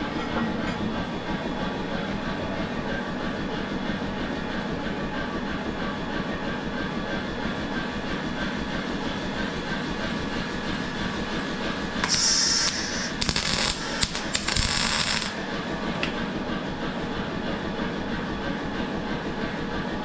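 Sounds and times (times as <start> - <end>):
welder arc crackling: 12.0 - 16.1.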